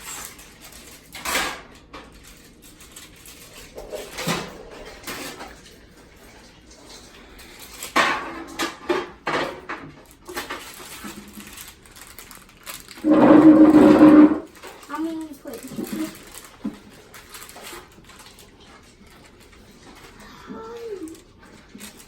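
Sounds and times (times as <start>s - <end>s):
dishes and utensils clattering: 0.0s - 7.1s, 7.7s - 11.4s, 13.0s - 16.8s.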